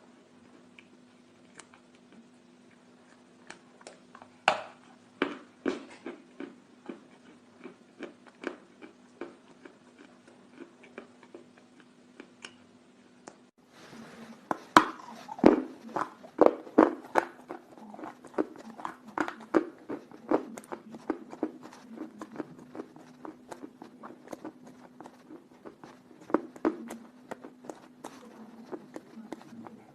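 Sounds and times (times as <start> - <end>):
faint steady hum: 0.0 - 29.9
chalk crunching when chewed: 5.2 - 12.7, 14.2 - 29.9.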